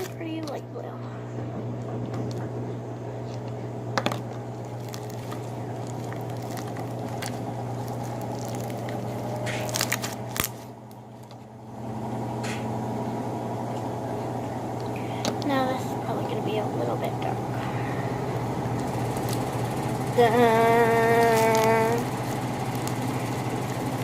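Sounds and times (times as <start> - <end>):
low machine hum: 0.0 - 24.0
slime squelching by hand: 4.4 - 11.4.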